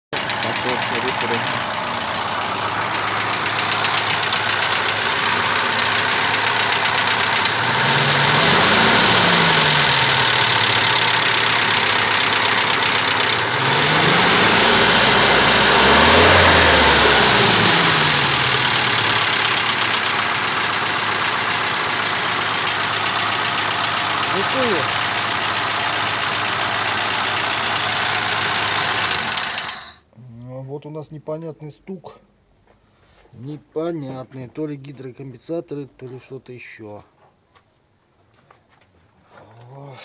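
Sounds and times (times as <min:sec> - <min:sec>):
petrol engine idling and revving: 0:00.0 - 0:29.9.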